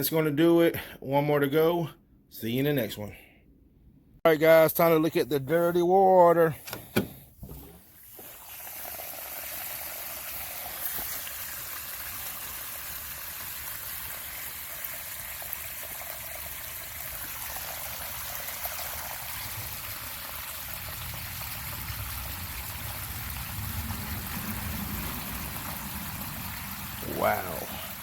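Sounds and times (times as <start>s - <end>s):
dirty water pouring: 7.4s - 28.0s.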